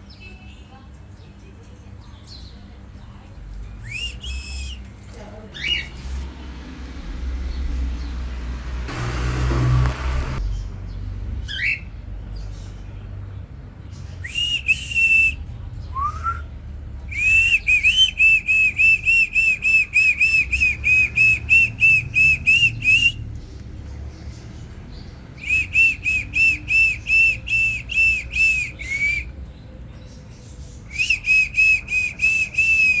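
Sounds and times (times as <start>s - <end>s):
bird singing whistled notes: 3.7s - 6.2s, 11.5s - 11.9s, 14.0s - 23.5s, 24.2s - 33.0s.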